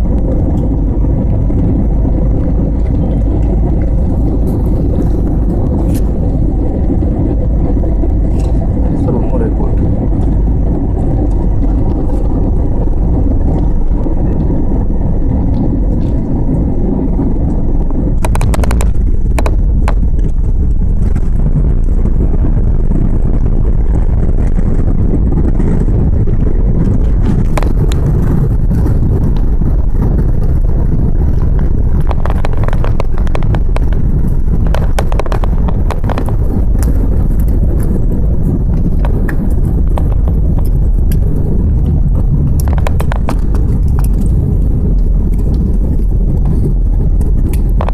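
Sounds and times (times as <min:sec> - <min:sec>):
airplane cabin rumble: 0:00.0 - 0:47.9
rattling and clicking: 0:25.8 - 0:47.9.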